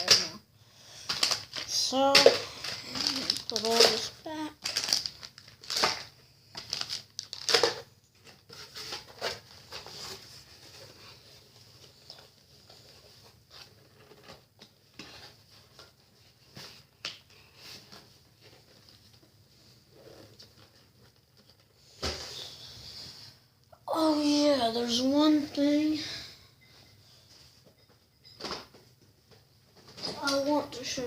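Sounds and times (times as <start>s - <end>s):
plastic packets crinkling: 1.1s - 7.9s.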